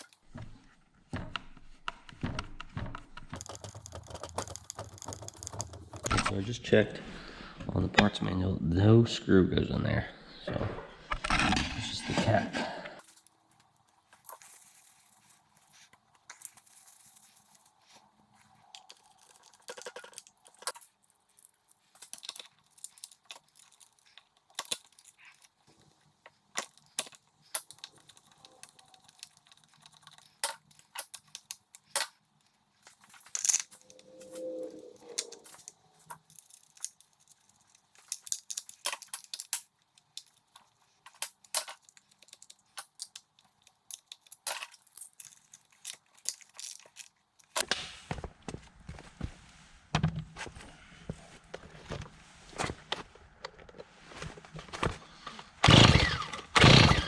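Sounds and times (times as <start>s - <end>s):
tools clicking and tapping on parts: 1.4s - 6.1s, 18.7s - 34.0s, 35.2s - 47.6s.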